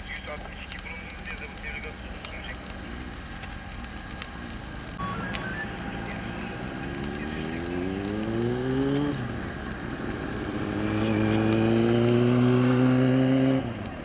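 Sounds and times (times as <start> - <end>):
vehicle engine accelerating: 4.1 - 14.0.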